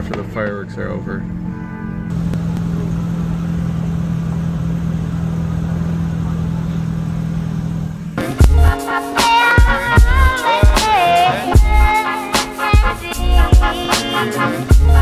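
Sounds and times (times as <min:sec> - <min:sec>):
car engine and road noise: 0:02.1 - 0:08.8
music with a beat: 0:08.2 - 0:15.0.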